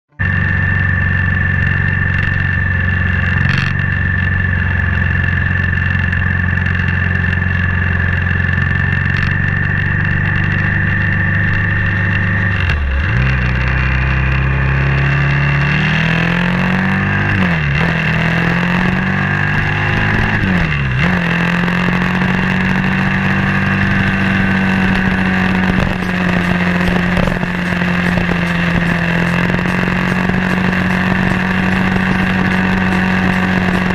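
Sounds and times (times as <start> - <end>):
motorcycle engine accelerating: 0.0 - 33.9.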